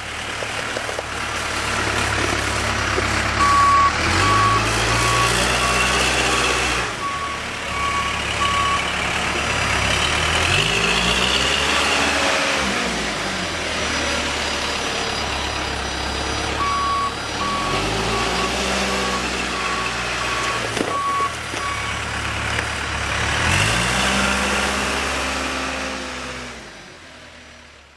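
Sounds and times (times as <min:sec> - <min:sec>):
diesel engine revving: 0:00.0 - 0:27.7
reversing alarm beeping: 0:03.4 - 0:08.9, 0:16.6 - 0:22.0.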